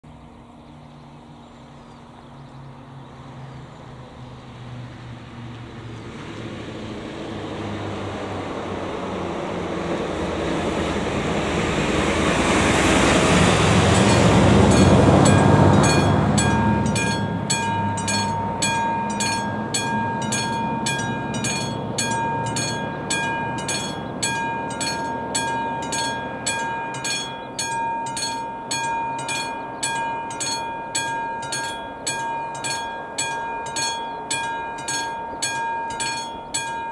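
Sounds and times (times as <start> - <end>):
vehicle passing close by: 2.4 - 36.9
level crossing warning bell ringing: 12.8 - 36.9.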